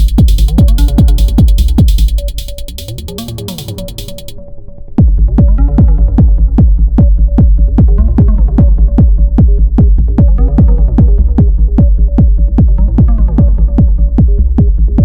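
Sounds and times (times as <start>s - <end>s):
heavy kick drum: 0.0s - 4.3s, 5.0s - 15.0s
pitch-dropping drum hits: 0.0s - 4.3s
deep bass: 0.0s - 4.4s, 5.0s - 15.0s
repeating synth note: 0.0s - 4.4s.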